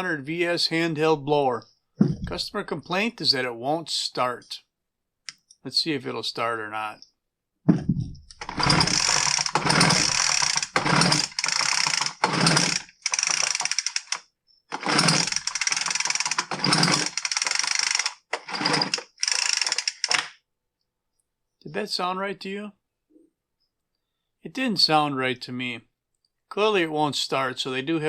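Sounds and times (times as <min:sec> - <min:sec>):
blower engine recoil cranking: 0:08.4 - 0:20.2.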